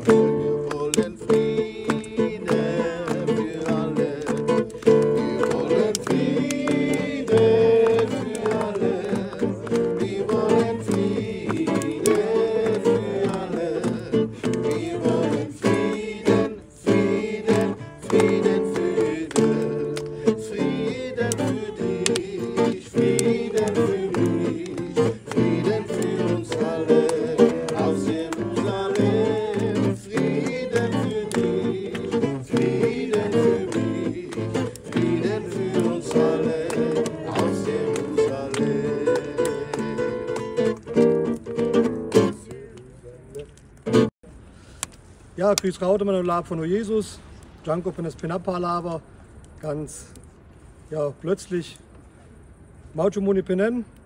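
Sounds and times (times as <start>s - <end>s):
group singing worship song: 0.0s - 40.8s
strummed acoustic guitar: 0.0s - 42.5s, 43.8s - 44.1s.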